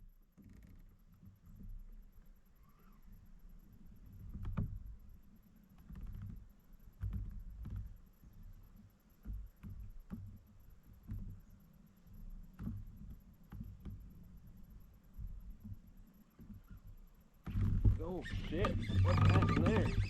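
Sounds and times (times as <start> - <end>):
gear bumping in boat: 17.5 - 20.0
water slapping boat hull: 17.6 - 20.0.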